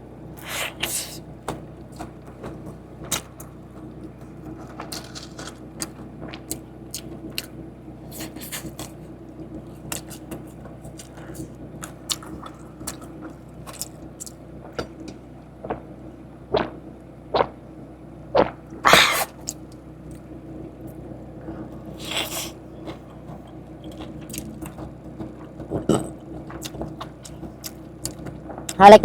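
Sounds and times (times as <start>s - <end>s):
steady low hum: 0.0s - 29.0s
chewing and crunching: 0.3s - 16.8s, 18.4s - 28.9s.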